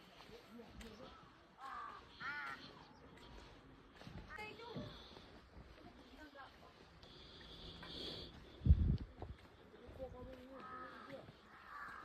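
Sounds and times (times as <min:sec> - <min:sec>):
crow cawing: 0:01.0 - 0:03.0, 0:10.4 - 0:12.0.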